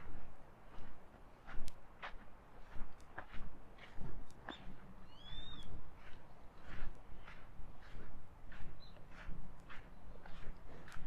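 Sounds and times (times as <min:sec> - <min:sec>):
footsteps crunching on sand: 0:00.0 - 0:11.0
wind: 0:00.0 - 0:11.0.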